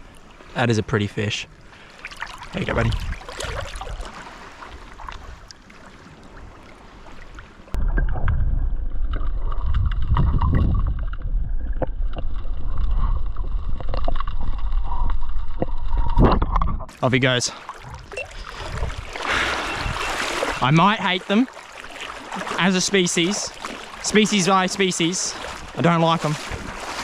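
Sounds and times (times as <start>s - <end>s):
muffled low rumble of water: 0.0s - 27.0s
seawater sloshing and splashing: 1.6s - 7.8s, 16.9s - 27.0s.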